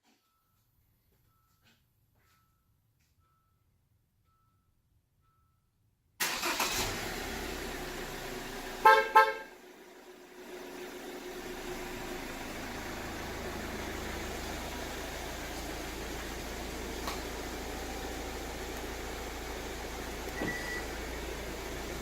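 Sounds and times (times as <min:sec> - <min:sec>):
car horn chirps: 0:08.8 - 0:09.6.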